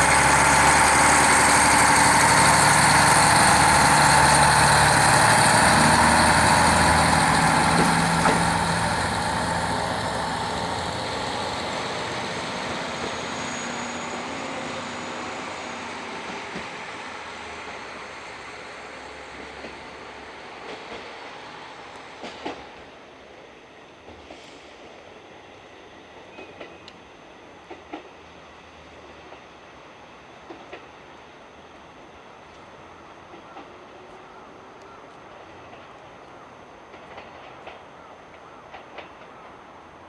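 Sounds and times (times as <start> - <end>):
wheels clacking over rail joints: 0.0 - 14.0
diesel railcar engine: 0.0 - 40.0.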